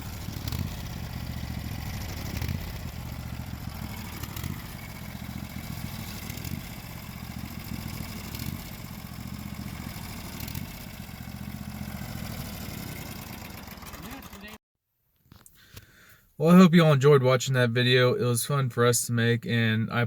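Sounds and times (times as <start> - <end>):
sawmill engine running: 0.0 - 14.6.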